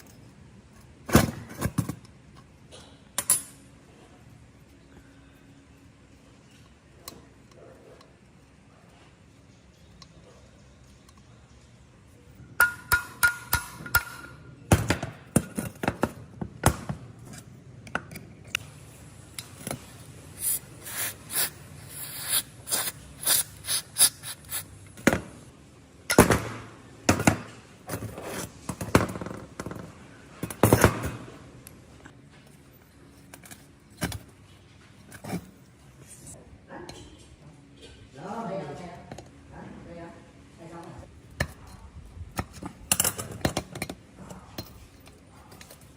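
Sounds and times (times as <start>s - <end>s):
hand tools and metal parts clinking: 0.0s - 3.8s, 6.4s - 18.6s, 27.1s - 38.0s, 41.3s - 45.9s.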